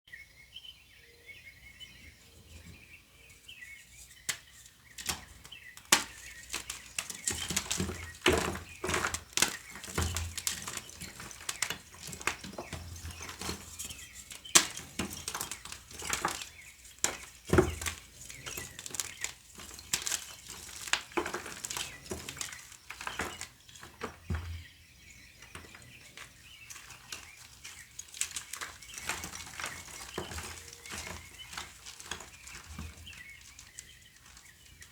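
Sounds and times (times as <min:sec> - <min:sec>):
small birds chirping: 0:00.1 - 0:34.9.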